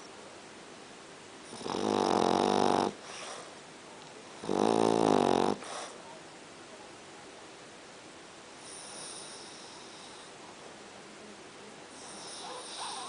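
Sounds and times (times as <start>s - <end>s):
dog snoring: 1.4s - 3.6s, 4.4s - 6.0s, 8.6s - 10.3s, 12.0s - 13.0s.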